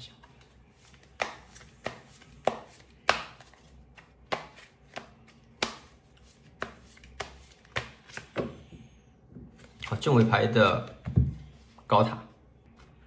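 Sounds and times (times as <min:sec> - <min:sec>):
cards tapping on table: 0:00.9 - 0:05.9, 0:06.5 - 0:08.6.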